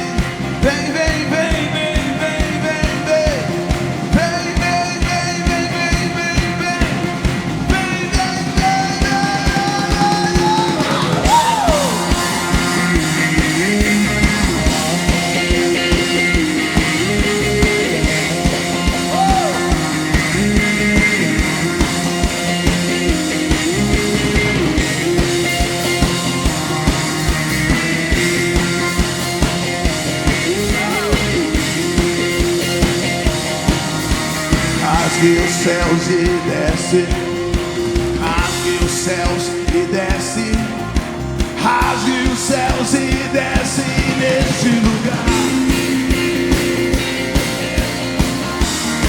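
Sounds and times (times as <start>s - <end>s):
live rock band instrumental: 0.0s - 49.0s.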